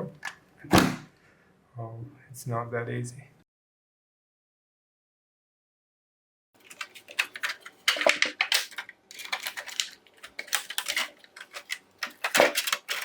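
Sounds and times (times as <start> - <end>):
clicks and scrapes of parts handled: 6.6 - 13.0.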